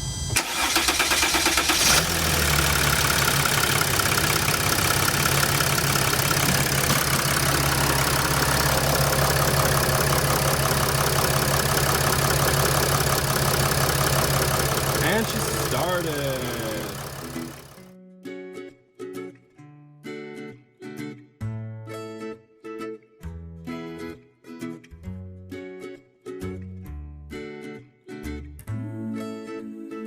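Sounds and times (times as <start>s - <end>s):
diesel engine cranking: 0.4s - 17.8s
diesel engine idling: 0.4s - 17.8s.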